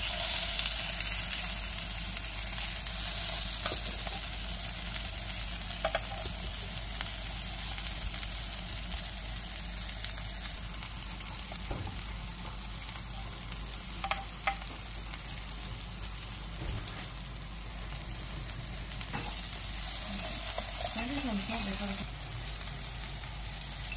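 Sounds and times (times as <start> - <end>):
food sizzling in a pan: 0.0 - 23.9.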